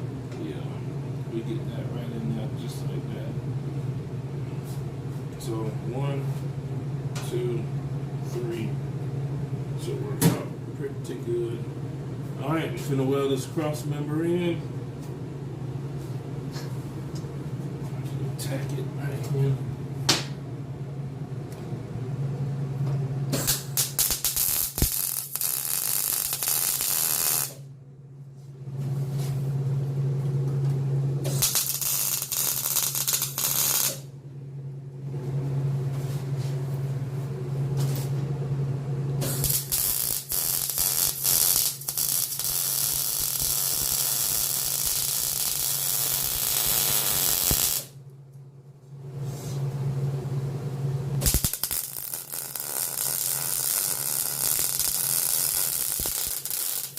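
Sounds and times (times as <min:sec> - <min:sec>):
welder low buzz: 0:00.0 - 0:48.1, 0:48.9 - 0:56.9
welding arc crackling: 0:23.4 - 0:27.6, 0:31.3 - 0:34.1, 0:39.2 - 0:48.0, 0:51.2 - 0:56.9.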